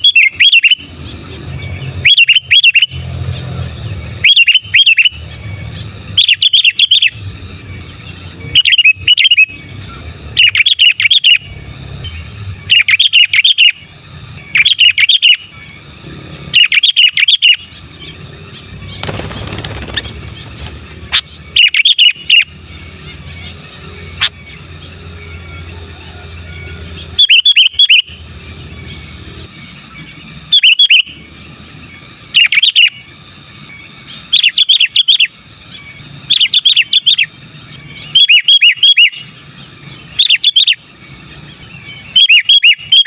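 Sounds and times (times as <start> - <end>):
bird singing bubbly whistles: 0.0 - 1.0, 1.6 - 3.0, 4.1 - 5.2, 27.1 - 28.2, 30.5 - 31.2, 37.9 - 39.4, 41.5 - 43.0.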